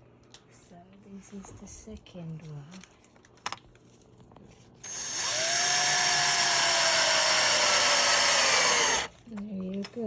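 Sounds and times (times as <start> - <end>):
power drill driving a screw: 4.8 - 9.1.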